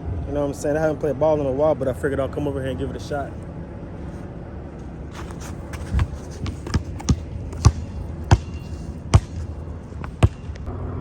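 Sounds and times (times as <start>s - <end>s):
basketball bouncing on hard court: 5.6s - 10.6s.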